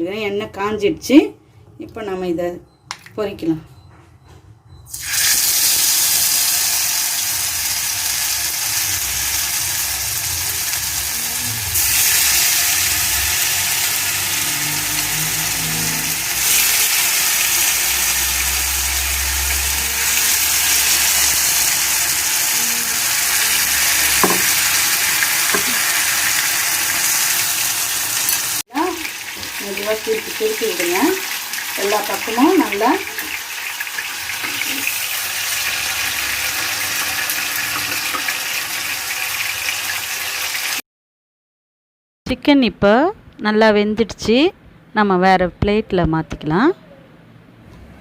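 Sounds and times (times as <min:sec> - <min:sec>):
chicken deep-frying in oil: 0:04.9 - 0:40.8.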